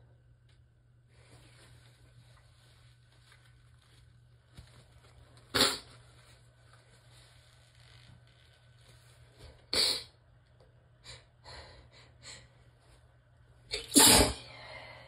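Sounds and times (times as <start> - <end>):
woman sneezing: 13.8 - 14.5.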